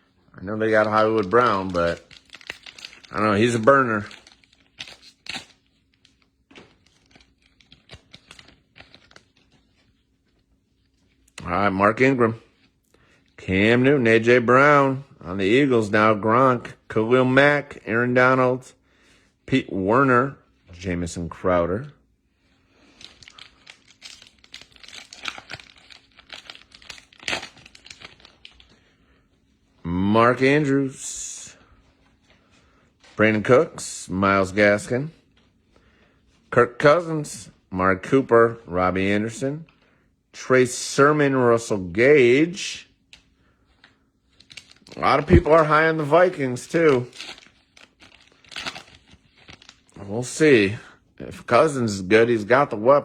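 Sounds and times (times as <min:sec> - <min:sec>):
foil wrapper tearing and crinkling: 0:00.6 - 0:09.8, 0:22.8 - 0:28.9, 0:43.1 - 0:50.4
cards being handled: 0:00.8 - 0:10.4, 0:43.1 - 0:49.9.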